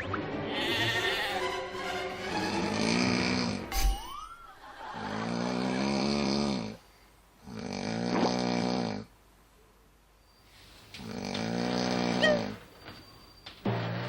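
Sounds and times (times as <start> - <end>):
man snoring: 2.7 - 3.6, 5.0 - 6.8, 7.4 - 9.1, 11.0 - 12.5.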